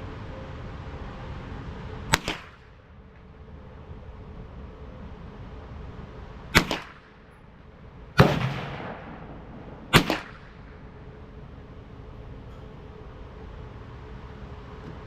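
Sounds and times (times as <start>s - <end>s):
gunshots with echo: 6.6s - 7.1s, 8.2s - 11.0s.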